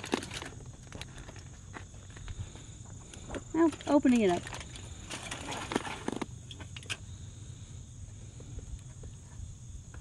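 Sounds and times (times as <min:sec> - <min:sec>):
aluminium foil crinkling: 0:00.0 - 0:01.7, 0:03.6 - 0:07.0.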